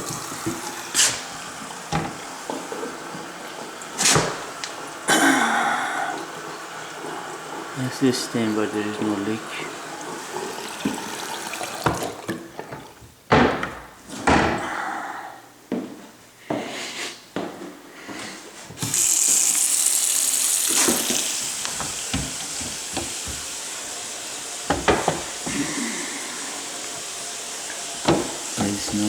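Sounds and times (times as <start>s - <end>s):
water running into a basin: 0.0s - 13.0s, 18.8s - 29.0s
cabinet doors knocking: 13.3s - 14.7s, 24.7s - 25.6s, 28.0s - 29.0s.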